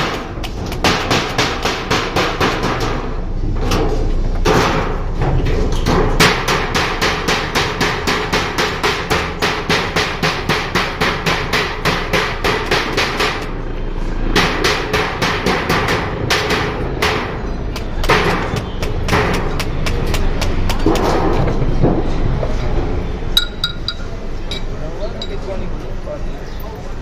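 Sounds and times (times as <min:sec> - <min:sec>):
hammer blows: 0:23.4 - 0:25.4.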